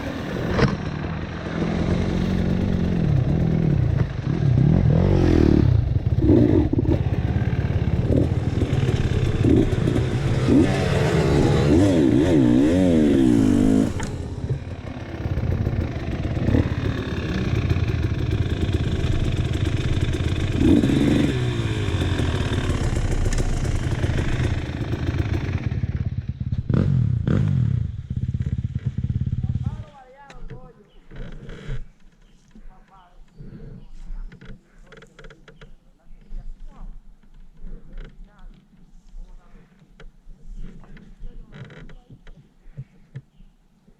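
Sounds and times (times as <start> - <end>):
dirt bike engine revving: 0.0 - 29.9.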